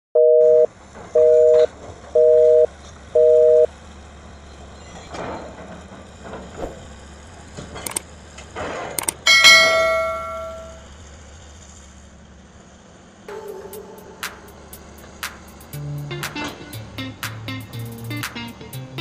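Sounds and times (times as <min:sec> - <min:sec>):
heavy machinery hum: 0:00.7 - 0:12.2, 0:13.2 - 0:19.0
metallic clanks: 0:09.0 - 0:10.9.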